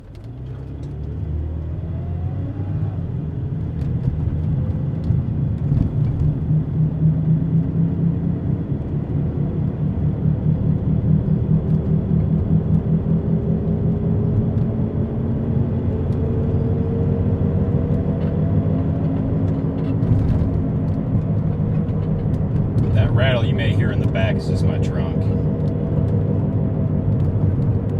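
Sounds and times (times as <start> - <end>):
road noise: 0.0 - 27.9
wheel bearing whomping drone: 9.9 - 27.9.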